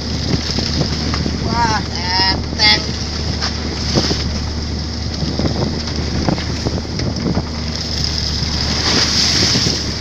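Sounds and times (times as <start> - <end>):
boat engine humming: 0.0 - 10.0
wind on microphone: 0.0 - 10.0.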